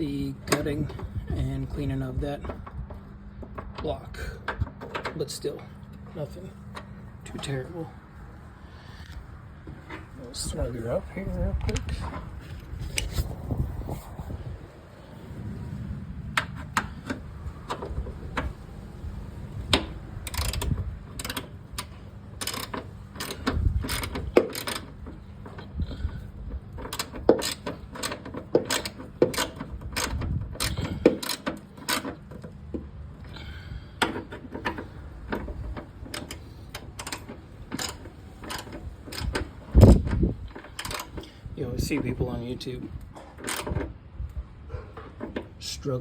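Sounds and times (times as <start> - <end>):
ratchet wrench clicking: 19.7 - 26.0, 26.8 - 32.2, 36.1 - 41.2.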